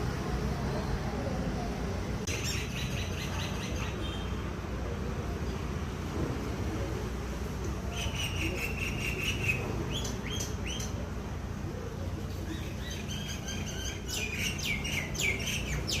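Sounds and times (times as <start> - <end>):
myna bird calling: 7.9 - 11.0, 12.4 - 16.0.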